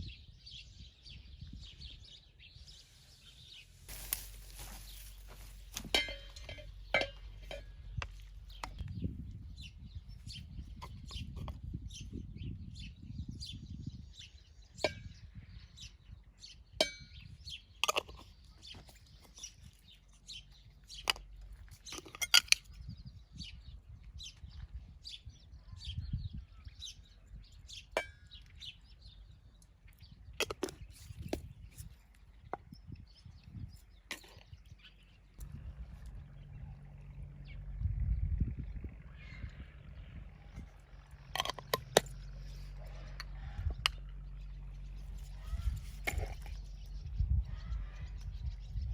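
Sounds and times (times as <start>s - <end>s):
utensils clinking on dishes and pans: 5.7s - 7.8s.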